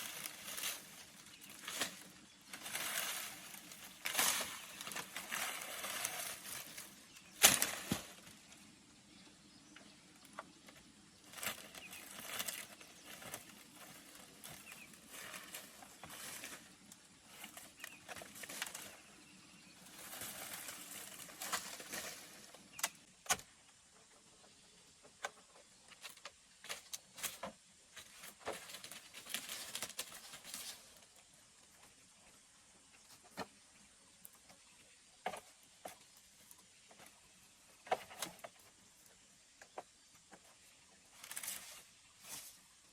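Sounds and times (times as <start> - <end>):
dry palm leaves rustling: 0.0 - 8.6, 11.2 - 23.4, 26.1 - 31.2, 41.0 - 42.9
sharp crack: 1.6 - 8.3.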